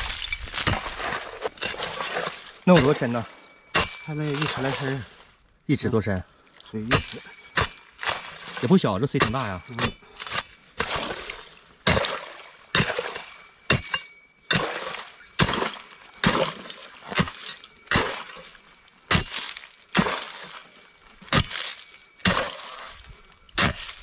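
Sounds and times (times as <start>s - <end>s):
ice crunching: 0.0s - 24.0s
hand strikes cracking ice: 17.1s - 18.4s, 19.1s - 20.6s.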